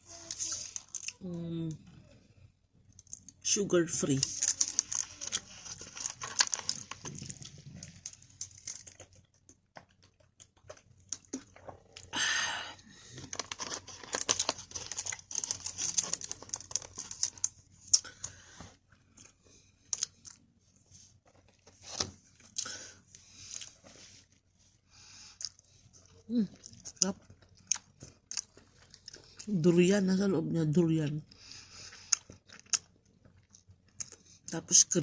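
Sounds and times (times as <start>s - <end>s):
plastic packaging crinkling: 4.0s - 11.9s, 13.0s - 18.0s
packaging tearing rustle: 4.1s - 9.3s, 13.2s - 17.6s
close-up chewing: 4.2s - 12.2s, 12.8s - 24.4s, 25.0s - 29.6s, 31.2s - 34.6s.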